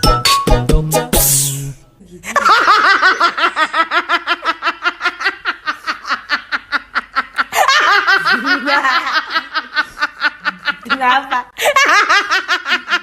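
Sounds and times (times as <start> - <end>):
person laughing hard: 2.2 - 10.9.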